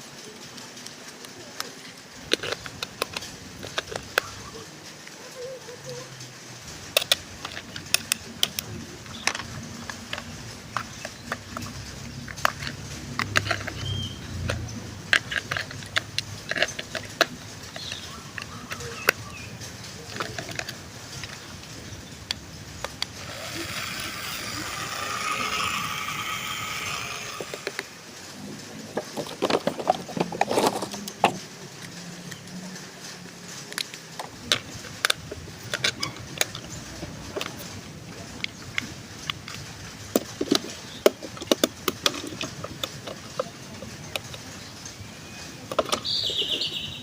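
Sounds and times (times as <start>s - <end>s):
plastic toy clicks and rattles: 0.0s - 47.0s
electric toy motor whirring: 2.1s - 4.7s, 5.4s - 28.0s.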